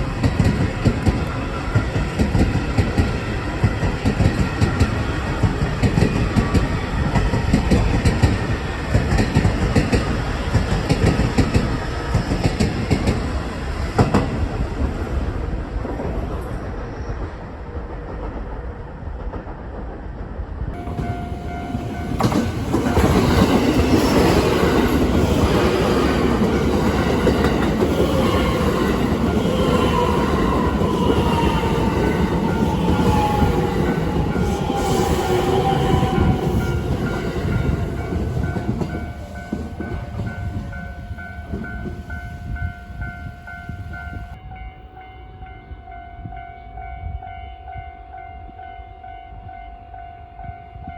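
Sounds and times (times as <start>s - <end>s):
train wheels clattering on rails: 0.0s - 44.4s
crossing warning bell ringing: 20.8s - 50.9s.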